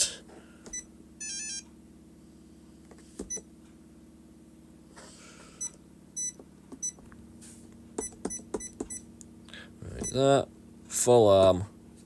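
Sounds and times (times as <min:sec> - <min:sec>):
faint steady hum: 0:00.0 - 0:12.0
keypad beeps: 0:00.7 - 0:01.6, 0:05.6 - 0:07.0, 0:08.0 - 0:09.0.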